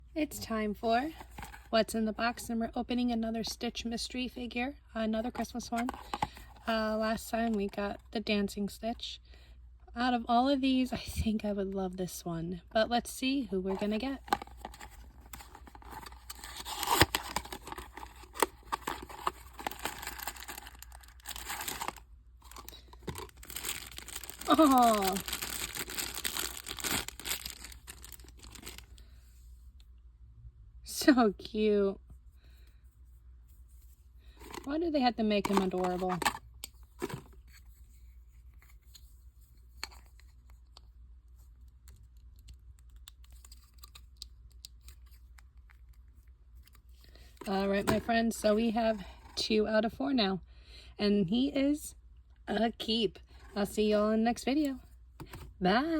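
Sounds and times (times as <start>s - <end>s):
packaging torn open by hand: 16.0s - 28.9s.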